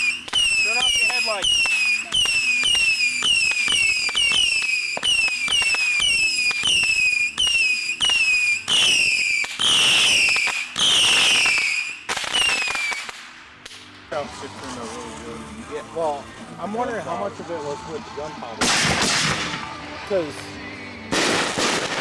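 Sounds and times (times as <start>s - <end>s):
whistling fireworks: 0.0s - 13.4s, 21.1s - 22.0s
firework crackling pops: 0.0s - 14.0s, 18.6s - 19.8s, 21.1s - 22.0s.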